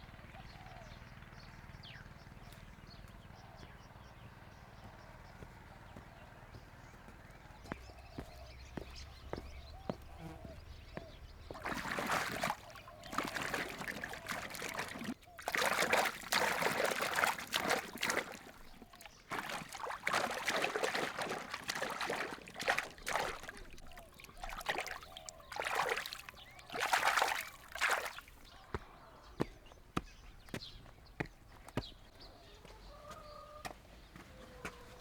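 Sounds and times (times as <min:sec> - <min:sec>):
water splashing and sloshing: 0:08.2 - 0:28.8.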